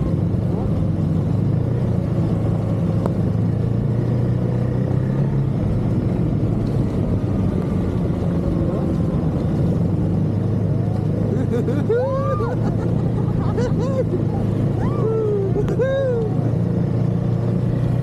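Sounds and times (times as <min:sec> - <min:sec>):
snowmobile engine running: 0:00.0 - 0:18.0.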